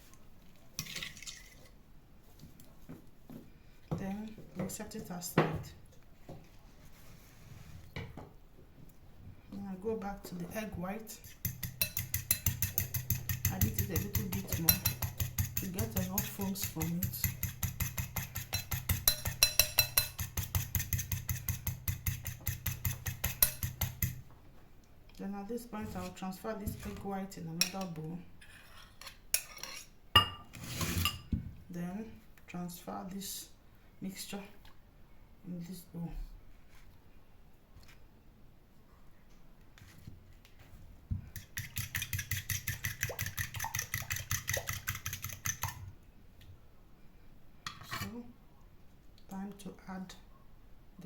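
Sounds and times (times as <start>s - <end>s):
egg whites beaten by hand: 11.2s - 24.2s, 41.3s - 45.8s
whisk clicking against bowl: 11.2s - 24.2s, 41.4s - 45.8s.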